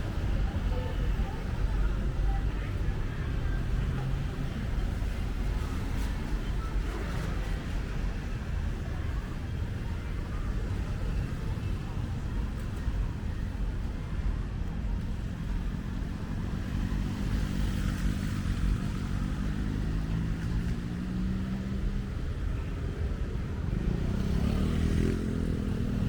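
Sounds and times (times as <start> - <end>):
vehicle engines running: 0.0 - 26.0
engine speeding up: 23.8 - 26.0.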